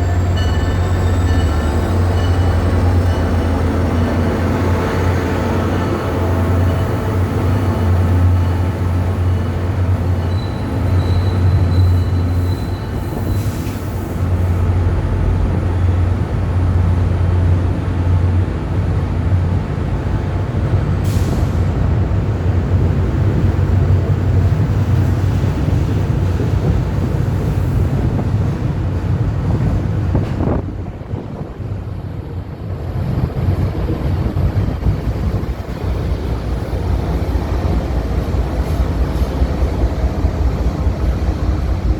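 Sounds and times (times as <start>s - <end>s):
locomotive train rumbling past: 0.0s - 41.9s
high wheel squeal: 9.3s - 14.0s.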